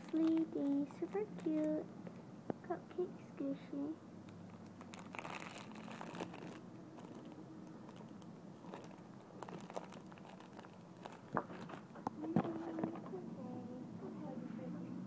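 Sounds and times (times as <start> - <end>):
crinkling and rustling of toy: 0.0 - 1.8, 4.3 - 13.2.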